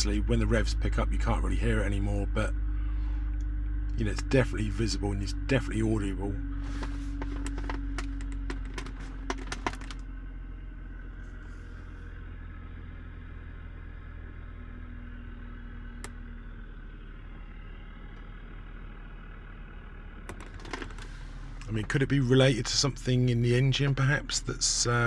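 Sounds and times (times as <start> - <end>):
car engine idling: 0.0 - 25.0.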